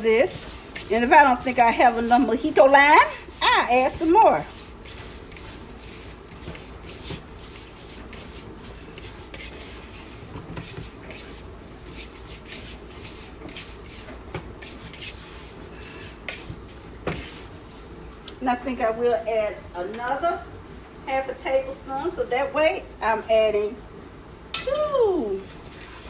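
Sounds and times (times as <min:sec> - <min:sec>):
glove rustling: 0:00.0 - 0:18.0
hand rubbing and squishing chicken: 0:00.0 - 0:18.3.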